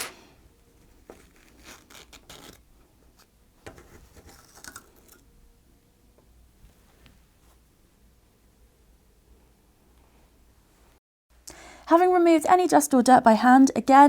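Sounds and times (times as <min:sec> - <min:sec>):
scratching and rubbing handling noises: 0:00.0 - 0:05.2.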